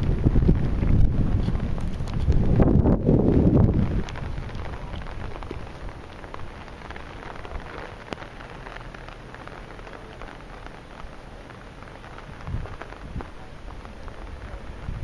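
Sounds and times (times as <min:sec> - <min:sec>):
low wind rumble on microphone: 0:00.0 - 0:15.0
rain falling: 0:00.0 - 0:15.0.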